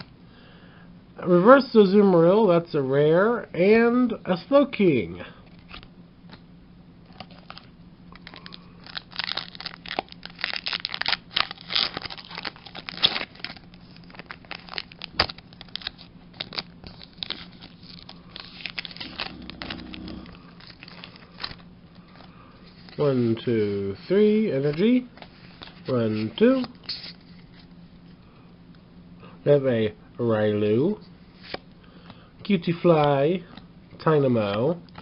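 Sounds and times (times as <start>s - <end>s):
foil wrapper crinkling and tearing: 7.1s - 23.0s.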